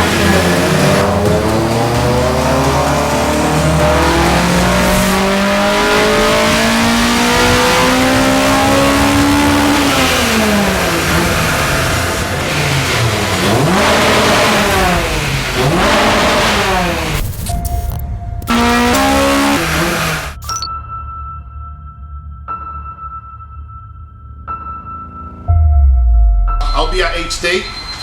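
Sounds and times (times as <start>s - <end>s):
car engine revving: 0.0s - 20.4s.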